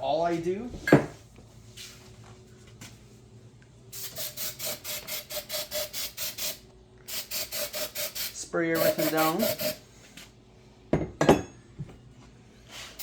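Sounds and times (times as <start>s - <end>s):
rhythmic hissing strokes: 3.9s - 9.9s
spray hissing: 4.0s - 9.8s.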